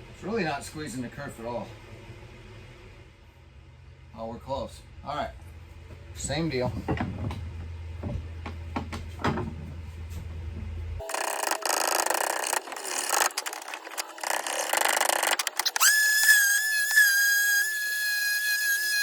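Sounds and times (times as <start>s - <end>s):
faint steady hum: 0.0s - 15.6s
power tool high whine: 11.0s - 19.0s.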